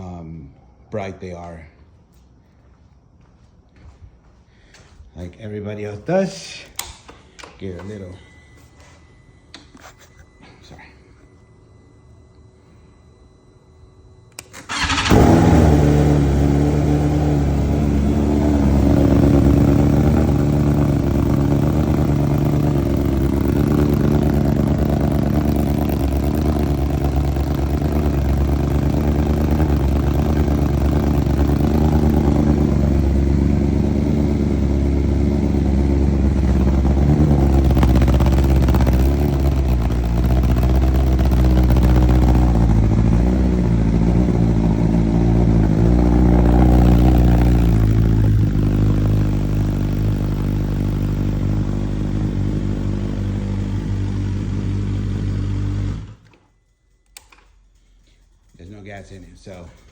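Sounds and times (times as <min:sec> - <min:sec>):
motorcycle engine cranking: 0:14.4 - 0:57.7
motorcycle engine idling: 0:14.7 - 0:56.5.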